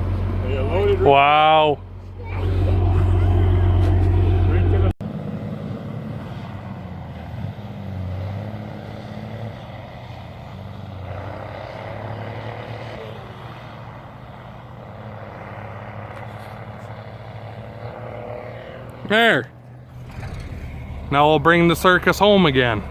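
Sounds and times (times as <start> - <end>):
tractor engine running: 0.0 - 12.6, 18.8 - 22.9.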